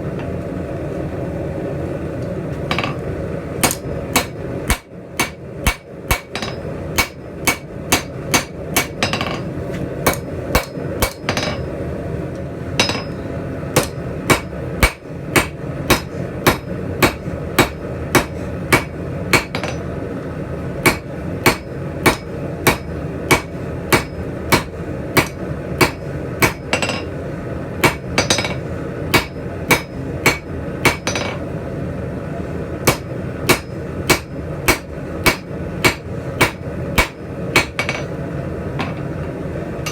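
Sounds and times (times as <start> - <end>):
hammer striking hot steel on anvil: 2.6 - 11.8, 12.8 - 20.0, 20.8 - 27.2, 27.8 - 31.4, 32.8 - 38.2.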